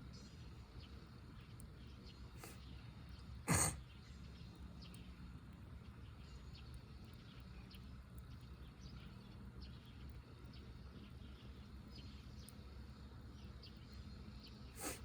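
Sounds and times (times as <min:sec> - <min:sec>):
wood fire crackling: 0:04.2 - 0:14.1.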